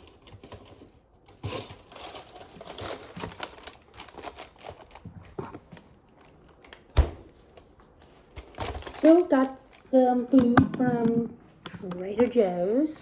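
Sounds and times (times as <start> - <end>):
packaging being handled: 0.0 - 9.8.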